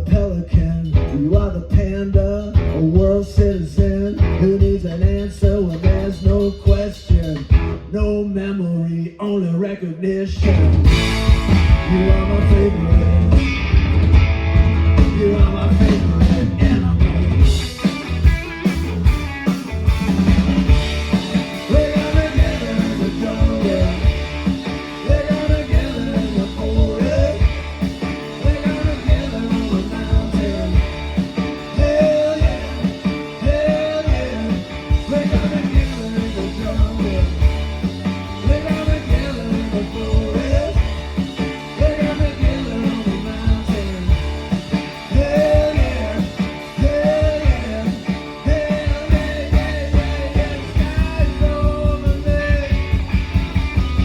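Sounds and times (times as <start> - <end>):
rock band playing live: 0.0 - 8.2, 10.3 - 54.0
steady drum beat: 0.0 - 8.2, 10.4 - 54.0.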